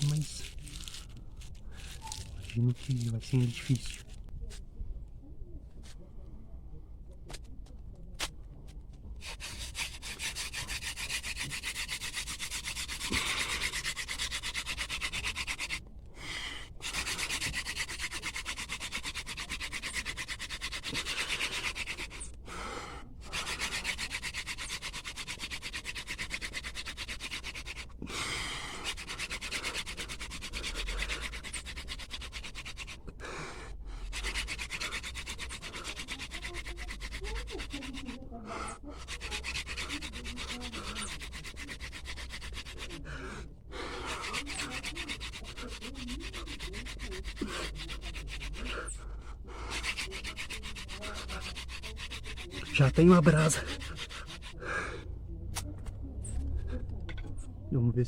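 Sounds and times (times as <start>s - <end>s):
fire drill spindle rubbing wood: 0.0s - 4.3s, 9.2s - 55.0s.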